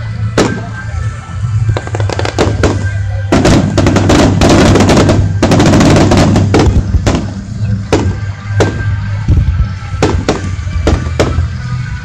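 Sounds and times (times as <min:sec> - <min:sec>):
fireworks crackling barrage: 0:00.0 - 0:12.0
music: 0:00.0 - 0:12.0
fireworks bangs: 0:01.6 - 0:09.1, 0:10.0 - 0:11.6.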